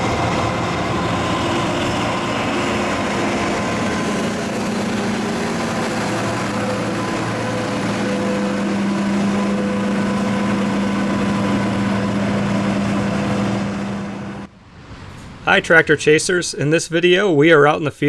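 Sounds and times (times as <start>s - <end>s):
combine harvester engine drone: 0.0s - 18.0s.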